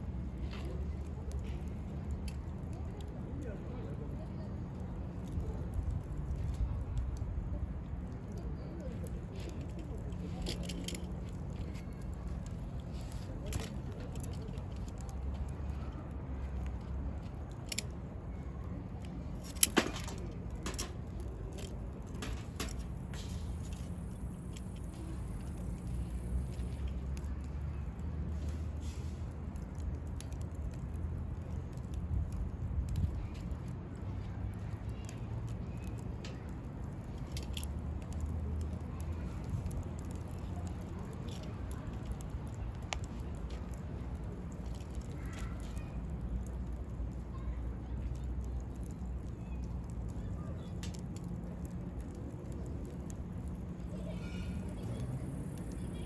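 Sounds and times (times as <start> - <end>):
campfire crackling: 0.0 - 56.0
low steady rumble: 0.0 - 56.0
sharp pops from burning firewood: 8.9 - 33.8, 34.4 - 54.1.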